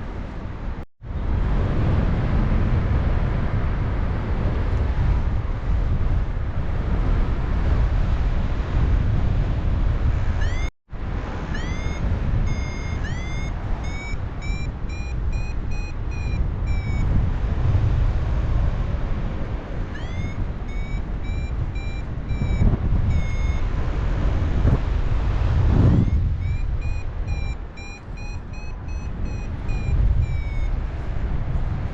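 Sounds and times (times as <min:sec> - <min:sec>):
wind rushing over microphone: 0:00.0 - 0:31.9
variometer beeping: 0:10.4 - 0:10.7, 0:11.5 - 0:17.2, 0:19.9 - 0:23.8, 0:25.7 - 0:31.2.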